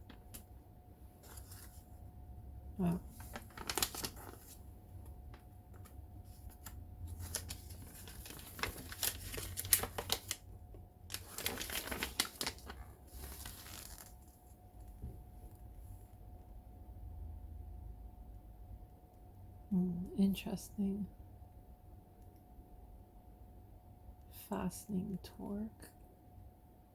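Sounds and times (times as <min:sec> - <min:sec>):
paper pages flipping: 0:01.2 - 0:01.9, 0:02.9 - 0:04.6, 0:05.3 - 0:10.5, 0:11.1 - 0:15.0.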